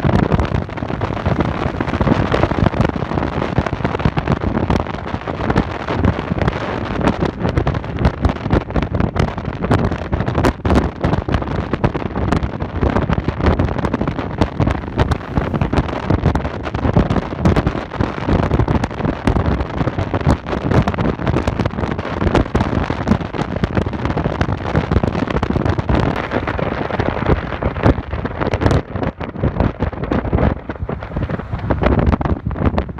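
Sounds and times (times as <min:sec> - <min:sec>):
road and engine noise: 0:00.0 - 0:08.4, 0:13.5 - 0:19.1, 0:26.1 - 0:32.9
wind buffeting microphone: 0:00.0 - 0:32.9.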